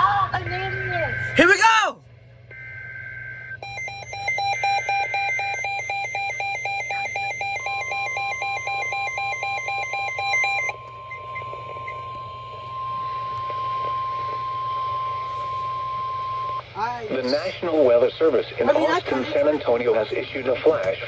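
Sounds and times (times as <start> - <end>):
rapid high-pitched electronic beeps: 3.6 - 12.0
steady alarm tone: 3.6 - 16.6.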